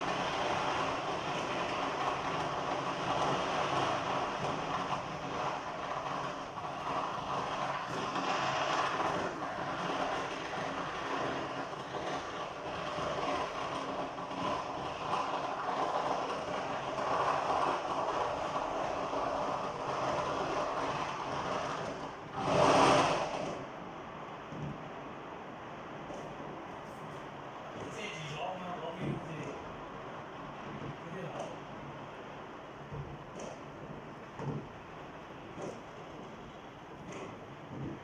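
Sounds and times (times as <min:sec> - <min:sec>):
loud firework burst: 0:00.0 - 0:25.1
fireworks crackling: 0:00.0 - 0:38.0.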